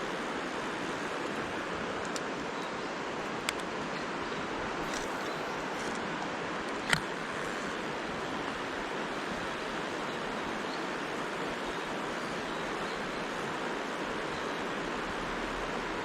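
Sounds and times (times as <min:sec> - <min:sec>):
stream water rushing: 0:00.0 - 0:16.0.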